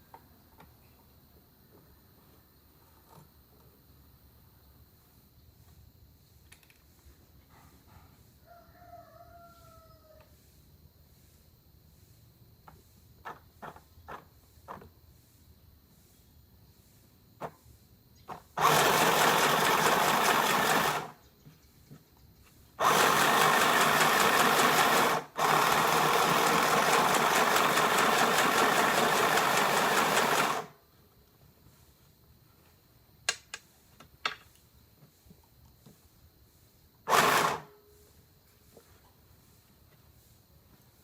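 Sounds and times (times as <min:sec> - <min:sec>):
sewing machine stitching: 0:18.6 - 0:21.2, 0:22.8 - 0:30.7, 0:37.1 - 0:37.7.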